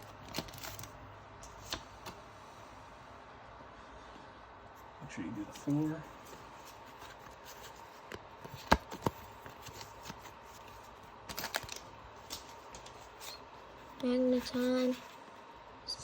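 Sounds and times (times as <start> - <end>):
card pack crinkling: 0.0 - 1.8, 5.5 - 15.0
cards rustling: 0.0 - 2.2, 5.4 - 15.2.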